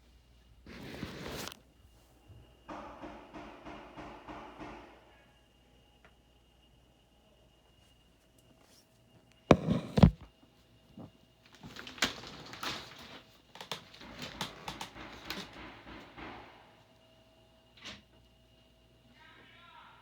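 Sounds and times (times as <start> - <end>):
clattering and knocking: 9.5 - 10.3, 14.0 - 16.7
loud thumps: 9.5 - 10.3.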